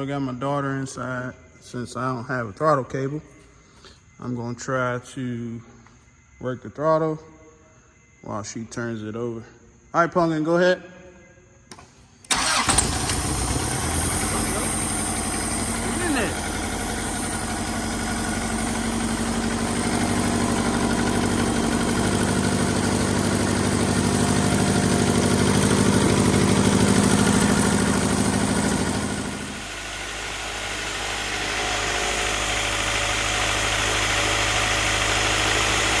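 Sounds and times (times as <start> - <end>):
car engine revving and idling: 12.3 - 36.0.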